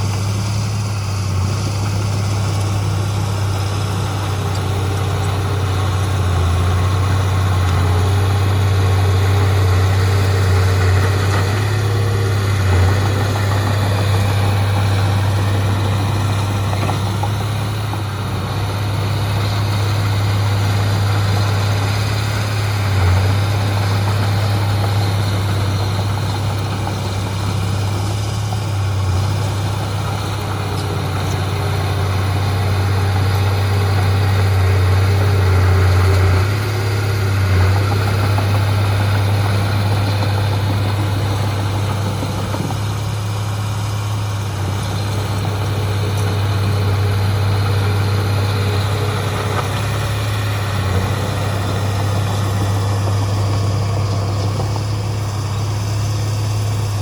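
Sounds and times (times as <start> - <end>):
heavy diesel engine running: 0.0 - 57.0.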